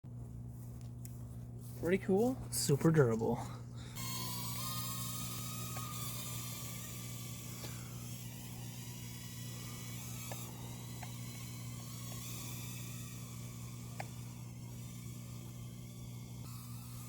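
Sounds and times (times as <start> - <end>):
low electrical hum: 0.1 - 17.0
toy drone propellers buzzing: 3.8 - 17.0.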